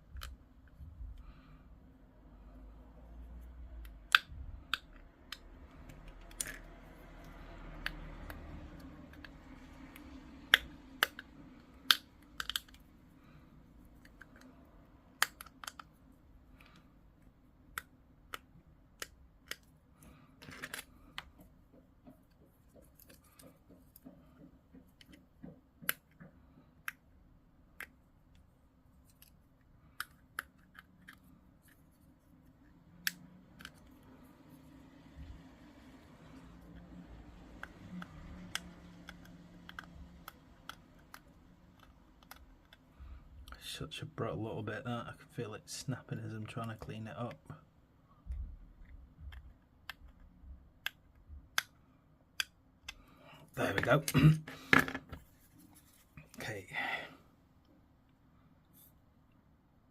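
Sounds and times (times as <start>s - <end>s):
cutters snipping plastic parts: 36.3s - 42.8s.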